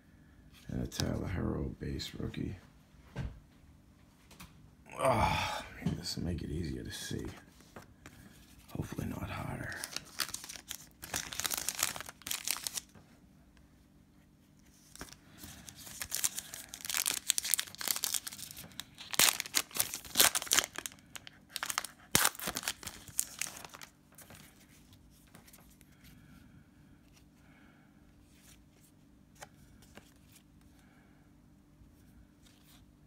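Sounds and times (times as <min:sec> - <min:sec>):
wrapper tearing and crinkling: 0:09.6 - 0:12.9, 0:14.8 - 0:23.9.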